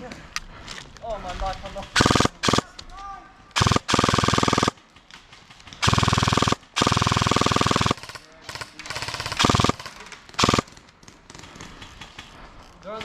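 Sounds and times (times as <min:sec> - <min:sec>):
airsoft gun full-auto bursts: 0:01.8 - 0:02.7, 0:03.5 - 0:12.4.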